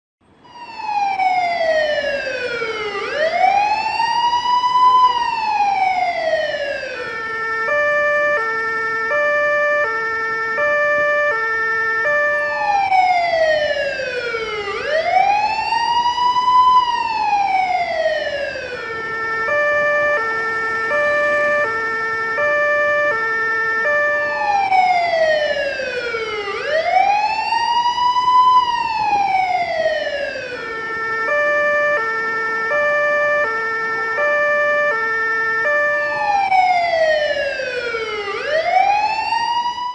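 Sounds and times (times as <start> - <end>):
police siren wail: 0.2 - 39.9
two-tone hi-lo siren: 0.2 - 39.9.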